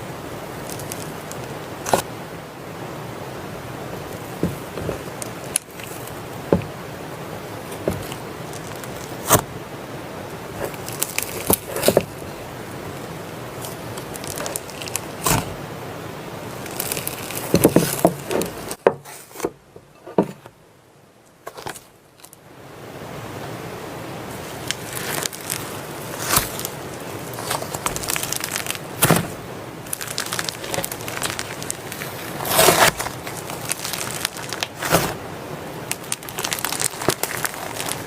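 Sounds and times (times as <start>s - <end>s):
steady hiss: 0.0s - 38.0s
slime squishing with pops: 0.6s - 2.1s, 4.0s - 6.8s, 7.7s - 9.5s, 10.6s - 12.4s, 13.6s - 15.6s, 16.5s - 18.8s, 24.4s - 35.2s, 35.8s - 38.0s.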